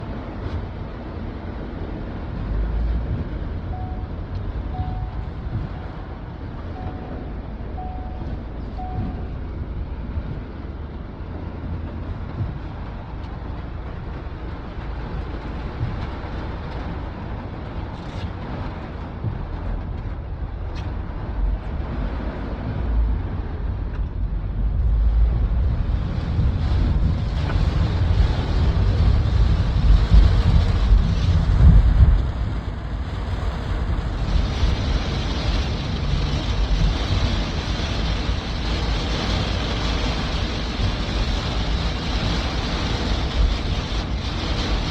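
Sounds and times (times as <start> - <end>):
city street noise: 0.0 - 44.9
deep low rumble: 0.0 - 44.9
steady rain: 0.0 - 44.9
short beeps: 3.7 - 5.6, 6.7 - 9.5.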